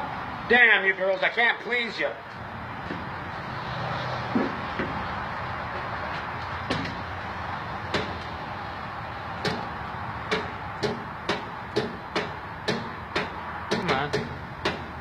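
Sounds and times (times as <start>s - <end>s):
sharp knocks: 4.3s - 5.0s, 6.7s - 7.0s, 7.9s - 8.3s, 9.4s - 9.7s, 10.3s - 15.0s.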